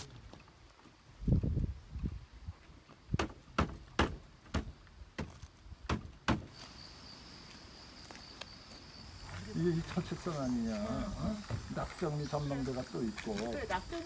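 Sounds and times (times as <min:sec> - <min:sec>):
high insect trill: 0:06.3 - 0:14.0
footsteps on hard surface: 0:09.2 - 0:12.2.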